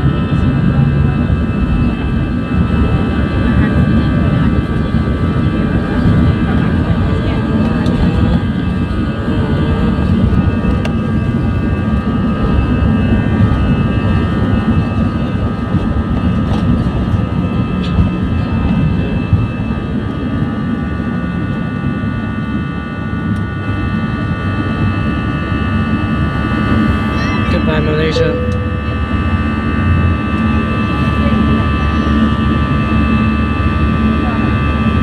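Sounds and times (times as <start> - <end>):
high fan whine: 0.0 - 35.0
jet engines rumbling: 0.0 - 35.0.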